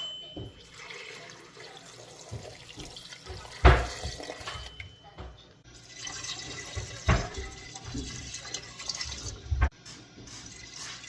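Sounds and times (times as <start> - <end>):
tap water running into pot: 0.6 - 4.9, 5.7 - 9.7, 10.3 - 11.0.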